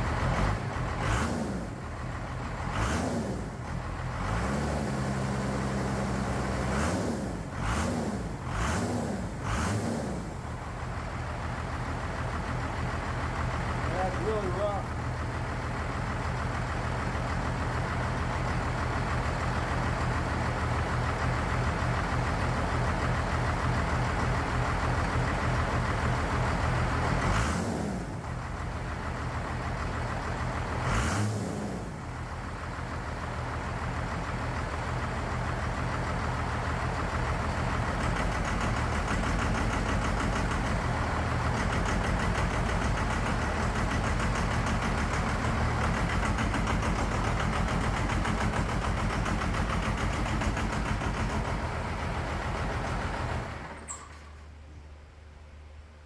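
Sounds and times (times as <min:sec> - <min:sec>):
diesel engine running roughly: 0:00.0 - 0:54.7.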